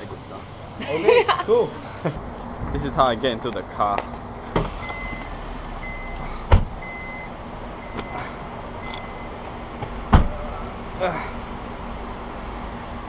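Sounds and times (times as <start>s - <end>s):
car warning chime beeping: 4.8s - 9.4s
heavy thumps: 6.2s - 6.9s, 9.8s - 10.6s.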